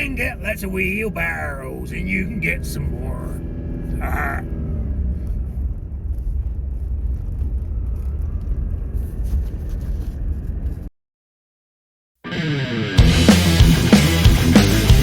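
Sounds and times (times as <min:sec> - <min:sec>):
engine rumbling: 0:00.0 - 0:10.9
music: 0:12.3 - 0:15.0.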